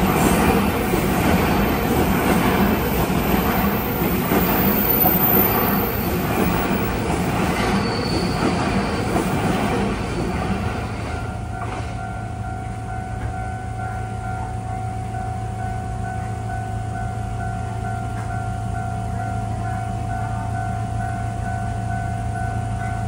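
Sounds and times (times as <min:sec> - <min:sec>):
train passing over rails: 0:00.0 - 0:23.0
high wheel squeal: 0:03.4 - 0:11.2.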